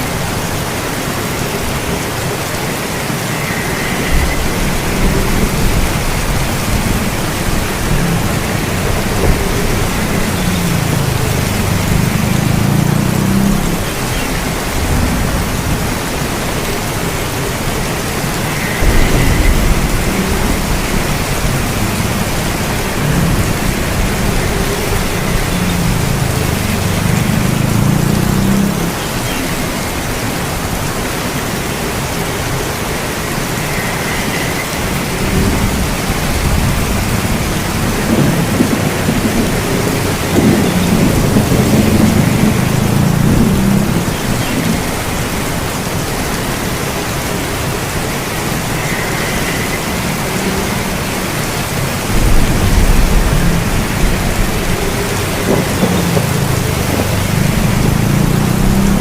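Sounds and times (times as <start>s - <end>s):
steady rain falling: 0.0s - 59.0s
low rumbles of thunder: 3.6s - 29.0s, 34.8s - 45.7s, 52.0s - 59.0s.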